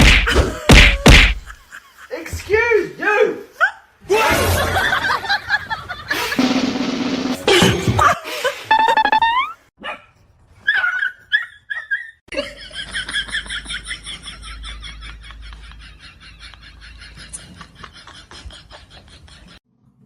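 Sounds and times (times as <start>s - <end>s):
dog high-pitched calls: 10.6s - 12.2s.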